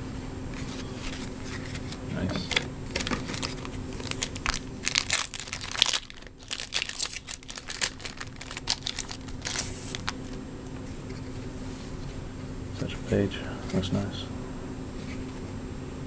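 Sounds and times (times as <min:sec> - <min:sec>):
card pack wrapping crinkling: 0:00.6 - 0:10.4.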